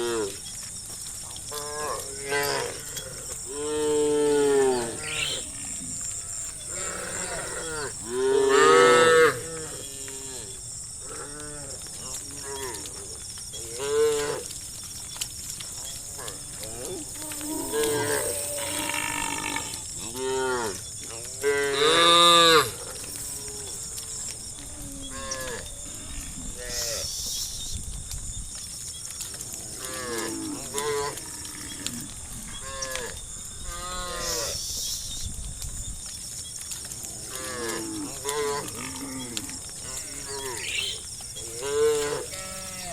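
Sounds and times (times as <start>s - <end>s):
cows mooing: 1.8s - 10.5s, 37.4s - 42.9s.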